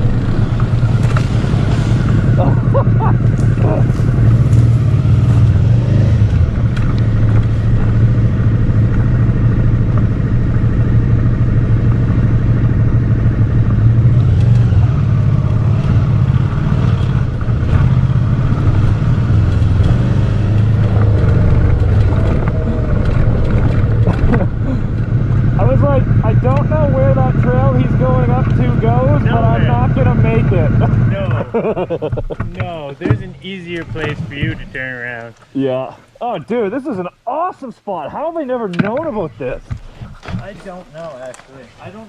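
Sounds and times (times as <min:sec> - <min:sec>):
motorcycle engine running: 0:00.0 - 0:33.3.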